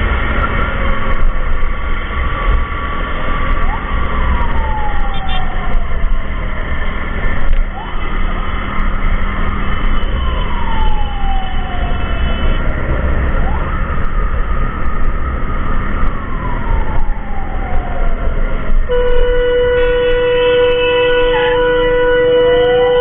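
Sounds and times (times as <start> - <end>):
emergency siren wailing: 0.0 - 23.0
road and wind rumble: 0.0 - 23.0
steady horn-like tone: 18.9 - 23.0.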